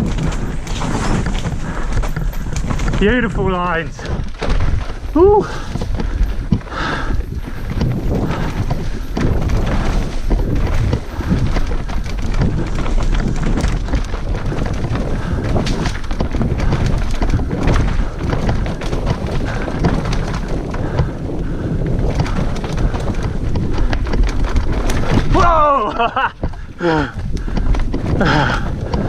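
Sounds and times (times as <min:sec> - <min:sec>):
bike knocks and rattles: 0:00.0 - 0:29.0
bike tyres rumbling over dirt: 0:00.0 - 0:29.0
wind on microphone: 0:00.0 - 0:29.0.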